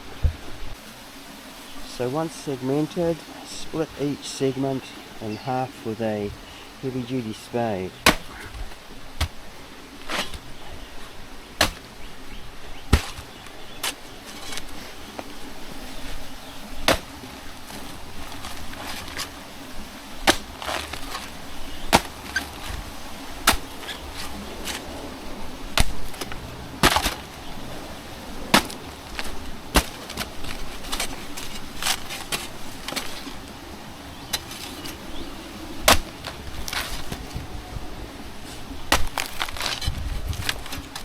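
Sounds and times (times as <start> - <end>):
spade chopping plant stem: 8.0 - 8.5, 12.9 - 14.0, 23.4 - 23.8, 25.8 - 27.2.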